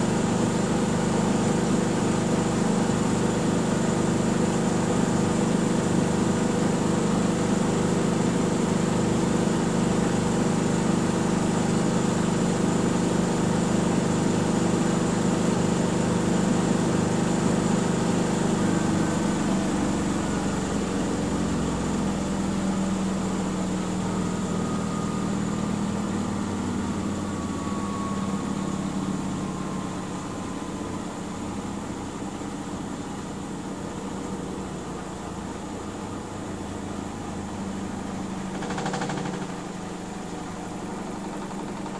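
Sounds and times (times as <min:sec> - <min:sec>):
washing machine spinning: 0:00.0 - 0:41.9
faint falling whine: 0:23.4 - 0:32.8.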